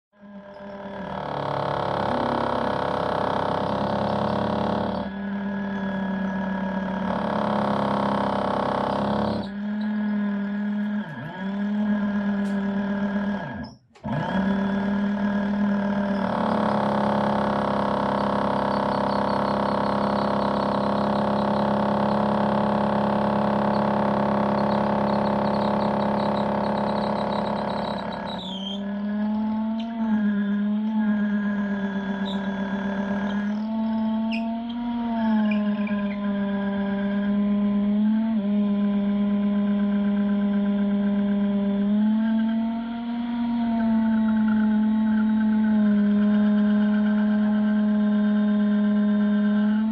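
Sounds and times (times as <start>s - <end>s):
electric drill boring into concrete: 0.2s - 49.9s.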